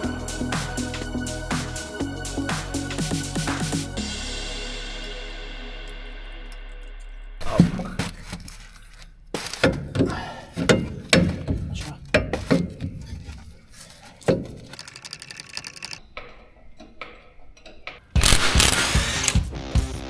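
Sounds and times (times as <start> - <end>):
ratchet clicks: 14.7 - 16.0, 18.2 - 19.5.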